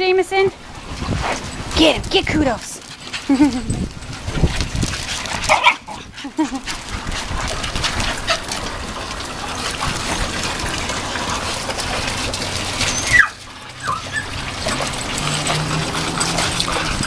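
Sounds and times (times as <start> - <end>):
water gushing: 3.2 - 17.0
small dog yelping: 5.5 - 6.0, 12.8 - 14.7.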